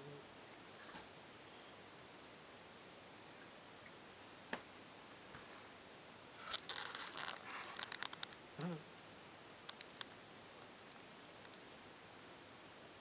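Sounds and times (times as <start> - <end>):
cat snoring: 8.6 - 8.9
cat snorting: 8.6 - 9.0
faint clicks: 9.6 - 10.2, 10.8 - 11.7.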